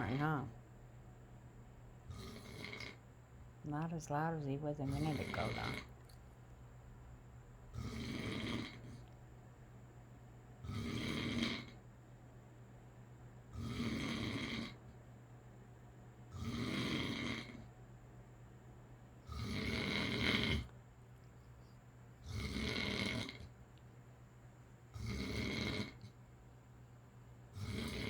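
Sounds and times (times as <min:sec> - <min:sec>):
man snoring: 0:02.1 - 0:03.0, 0:04.9 - 0:05.9, 0:07.8 - 0:09.0, 0:10.6 - 0:11.8, 0:13.6 - 0:14.8, 0:16.3 - 0:17.7, 0:19.3 - 0:20.7, 0:22.3 - 0:23.5, 0:25.0 - 0:26.1, 0:27.6 - 0:28.0.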